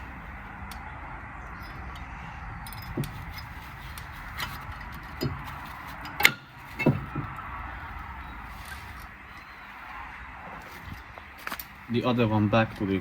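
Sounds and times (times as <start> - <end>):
metallic clicks of brake pad fitting: 0.6 - 7.0.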